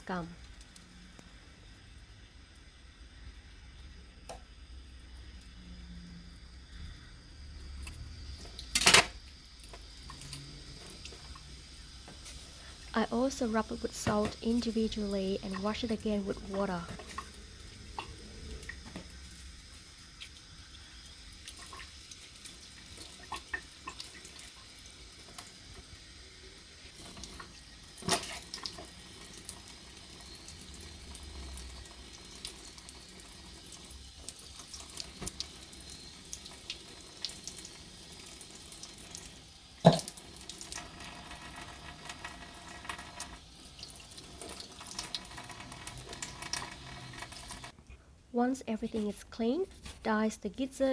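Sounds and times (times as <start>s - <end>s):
tap water running and splashing: 7.7s - 47.8s.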